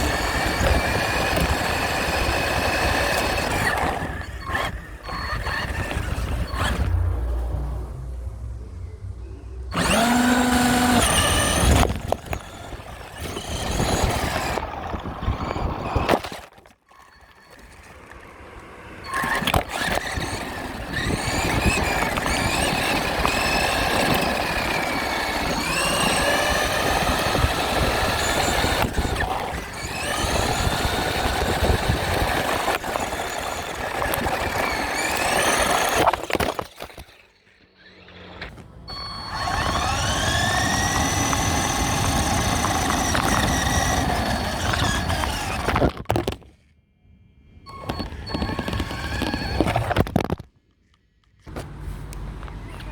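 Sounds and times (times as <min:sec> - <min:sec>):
rc truck motor whine: 0:00.0 - 0:07.4, 0:09.5 - 0:46.5, 0:47.5 - 0:50.5
rumble of tyres and drivetrain: 0:00.0 - 0:52.9.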